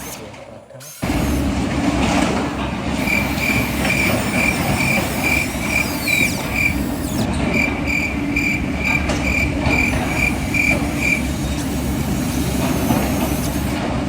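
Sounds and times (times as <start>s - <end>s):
rumble of model machinery: 0.0s - 14.0s.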